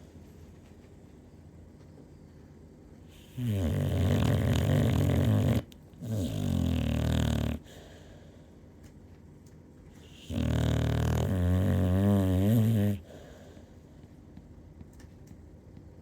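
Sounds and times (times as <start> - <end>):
heavy snoring: 3.3 - 7.8, 10.1 - 13.2.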